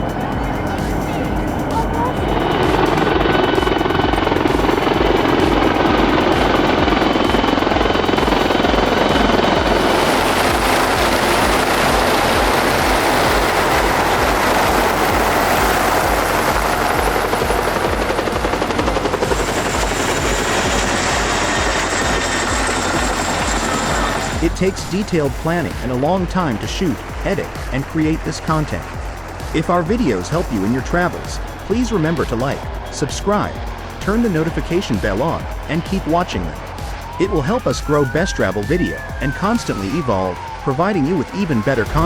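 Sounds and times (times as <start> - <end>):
helicopter flying past: 0.0 - 42.0.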